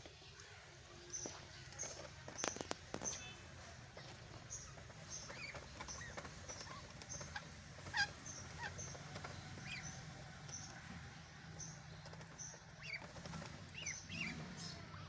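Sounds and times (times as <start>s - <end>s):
duckling peeping: 1.1s - 15.0s.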